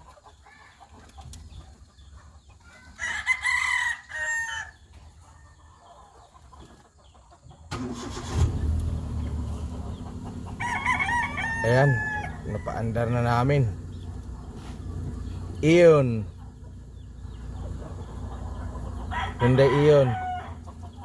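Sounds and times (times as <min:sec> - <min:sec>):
rooster crowing: 0:03.0 - 0:04.8, 0:10.5 - 0:13.4, 0:19.0 - 0:20.8
car engine starting and running: 0:07.7 - 0:10.6, 0:12.8 - 0:19.1.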